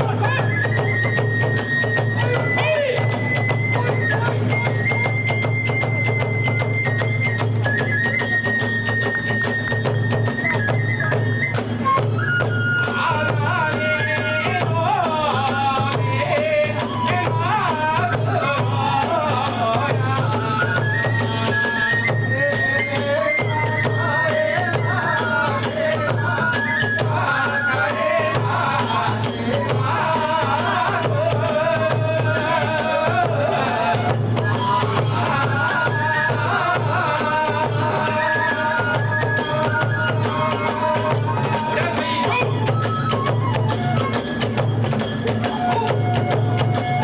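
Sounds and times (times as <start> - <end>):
steady drum beat: 0.0 - 8.1, 13.0 - 47.0
bamboo flute melody: 0.0 - 47.0
small hand cymbals clashing: 36.0 - 47.0.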